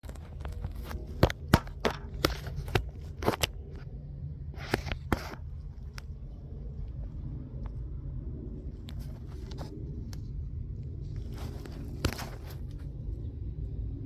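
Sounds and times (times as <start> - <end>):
sharp irregular clicks and knocks: 0.0 - 3.8
steady low hum: 0.0 - 14.0.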